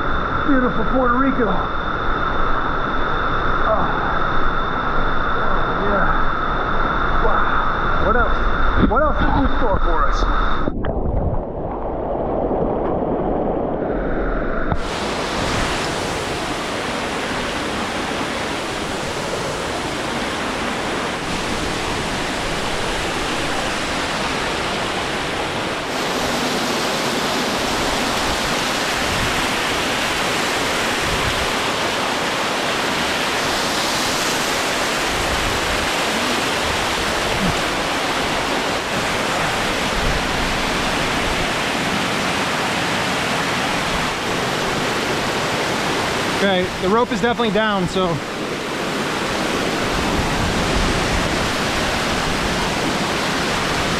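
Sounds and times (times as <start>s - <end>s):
waterfall rushing: 14.8s - 53.9s.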